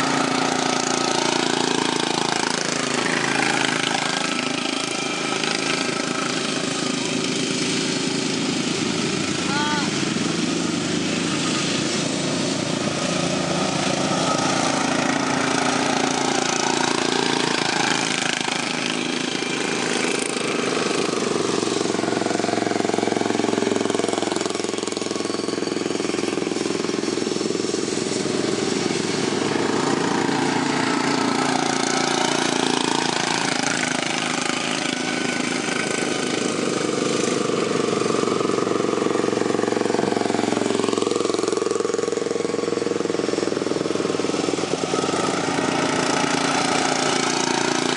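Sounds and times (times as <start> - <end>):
racing lawn mower engines revving: 0.0 - 47.9.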